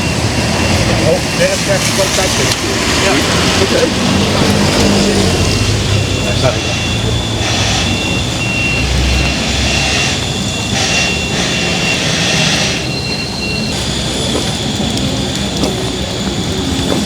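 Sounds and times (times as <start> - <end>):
vehicle passing: 0.0 - 13.0
thin high whine: 5.3 - 17.0.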